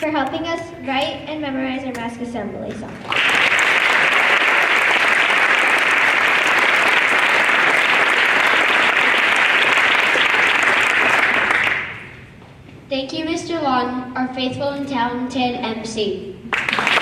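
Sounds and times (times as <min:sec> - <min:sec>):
audience applauding: 0:03.0 - 0:12.2, 0:16.5 - 0:17.0.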